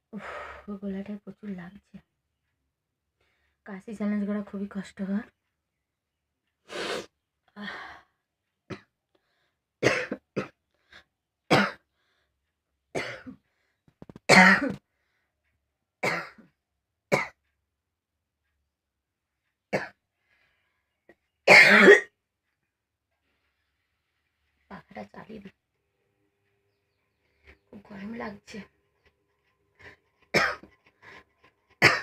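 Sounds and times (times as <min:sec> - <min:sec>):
person coughing hard: 0:09.8 - 0:10.6, 0:11.5 - 0:11.8, 0:14.3 - 0:14.8, 0:21.5 - 0:22.1, 0:30.3 - 0:30.7, 0:31.8 - 0:32.0.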